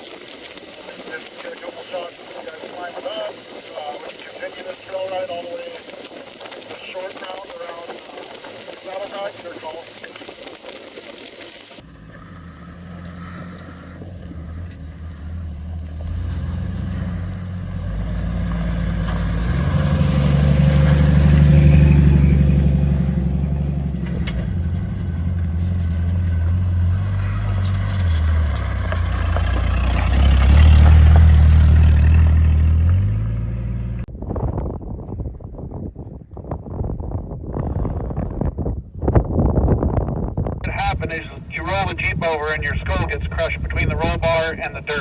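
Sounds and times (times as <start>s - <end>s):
engine revving under load: 11.8s - 34.1s.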